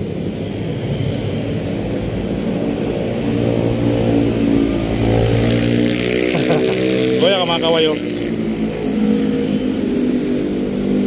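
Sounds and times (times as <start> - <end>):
vehicle engine running: 6.3 - 8.0.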